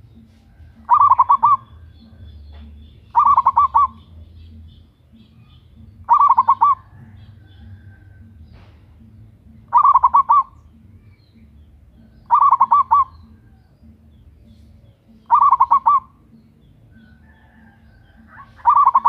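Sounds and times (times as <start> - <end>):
dove cooing: 0.0 - 4.2, 6.0 - 8.7, 9.5 - 10.8, 11.9 - 13.7, 14.4 - 19.0.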